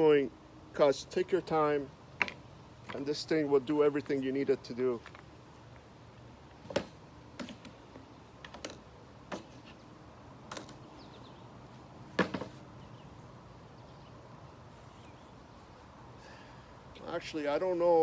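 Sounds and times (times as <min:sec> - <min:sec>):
knocks and clicks of wood handling: 0:02.2 - 0:03.0, 0:12.2 - 0:12.6.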